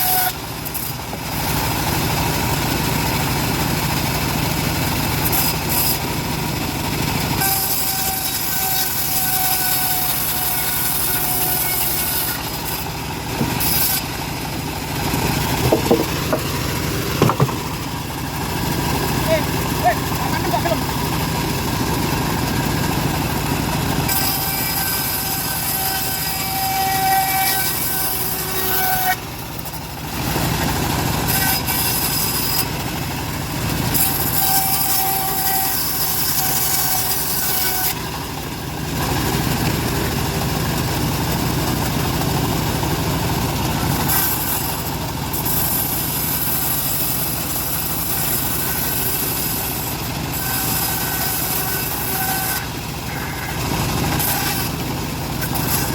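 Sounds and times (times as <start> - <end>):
bandsaw blade cutting wood: 0.0 - 55.9
machine droning: 0.0 - 55.9.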